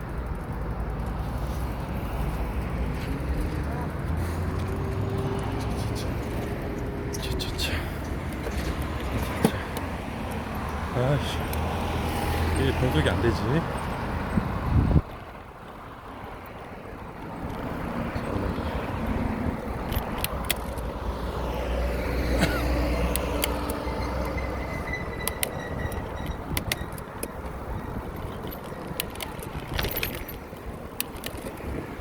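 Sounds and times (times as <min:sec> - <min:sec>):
car passing by: 0:01.2 - 0:14.9, 0:20.9 - 0:26.1
bicycle shifter and chain clicks: 0:19.8 - 0:21.0, 0:22.9 - 0:31.7.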